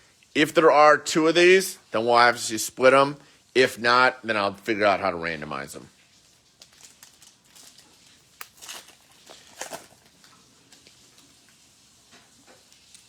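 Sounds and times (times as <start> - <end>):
wrapper crinkling and tearing: 6.0 - 11.6
cards being handled: 6.6 - 11.5.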